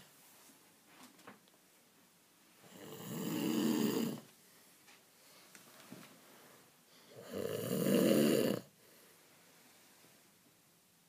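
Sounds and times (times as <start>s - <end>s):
quiet breathing: 2.6s - 10.5s
person snoring: 2.7s - 4.3s, 7.1s - 8.8s.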